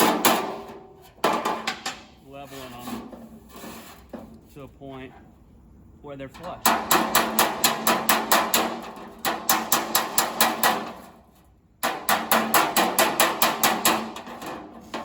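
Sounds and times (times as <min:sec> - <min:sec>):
hammer tapping sheet steel: 0:00.0 - 0:03.2, 0:06.4 - 0:15.0.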